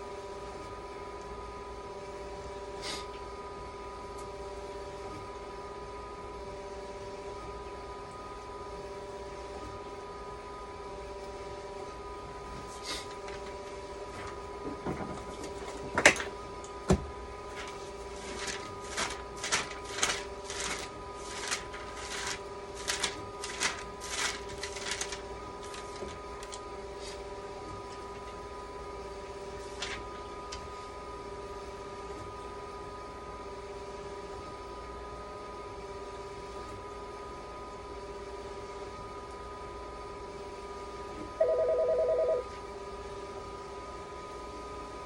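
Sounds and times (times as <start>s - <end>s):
dialysis machine humming: 7.0s - 33.1s, 41.0s - 45.0s.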